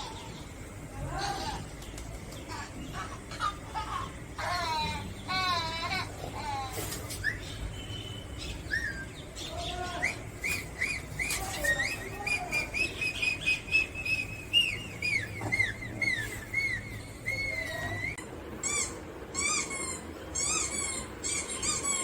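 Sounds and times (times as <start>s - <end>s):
bird-like chirping and whistling: 7.0s - 22.0s.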